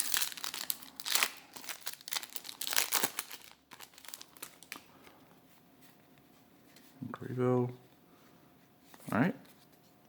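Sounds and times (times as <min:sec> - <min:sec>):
foil wrapper crinkling: 0:00.0 - 0:04.9.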